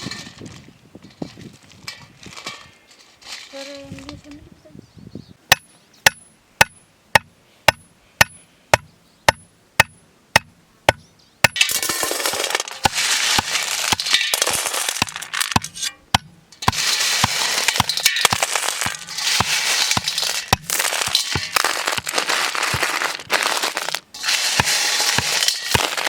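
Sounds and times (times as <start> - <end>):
rhythmic chopping knocks: 5.5 - 11.6.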